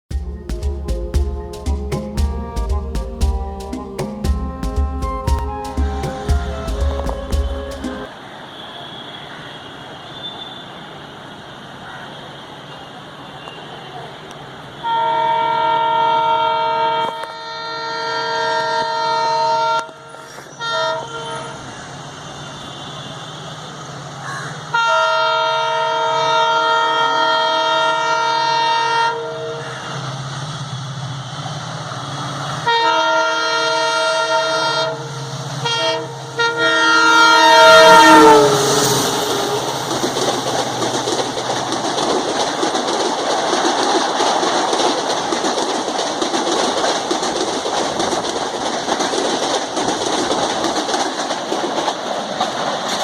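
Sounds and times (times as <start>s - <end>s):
locomotive horn honking: 1.6s - 8.1s, 14.8s - 21.6s, 24.7s - 29.6s, 32.6s - 40.3s.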